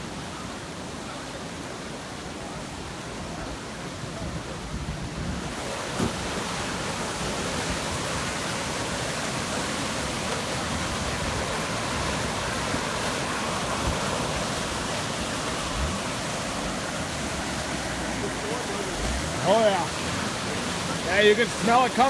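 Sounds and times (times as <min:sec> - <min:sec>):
floodwater rushing down creek: 0:00.0 - 0:22.0.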